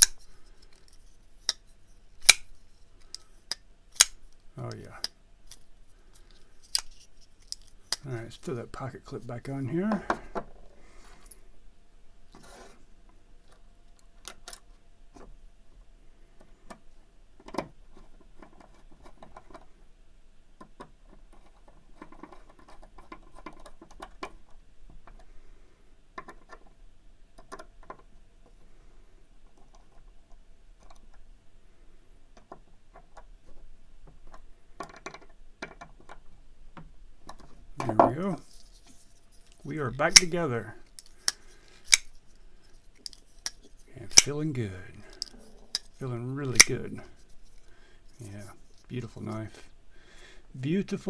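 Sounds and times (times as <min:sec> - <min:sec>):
small metal clicks: 0:00.0 - 0:04.5, 0:06.2 - 0:08.1, 0:38.4 - 0:44.4, 0:45.0 - 0:46.8.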